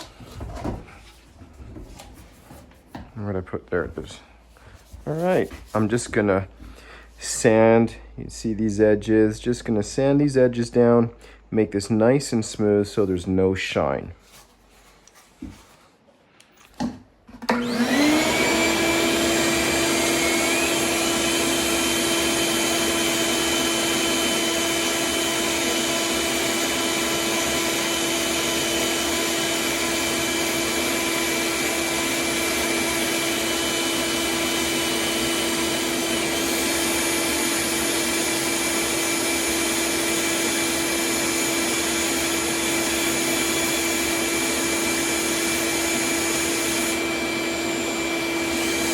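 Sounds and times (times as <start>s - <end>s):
power sander running: 4.9s - 6.2s, 17.4s - 48.9s.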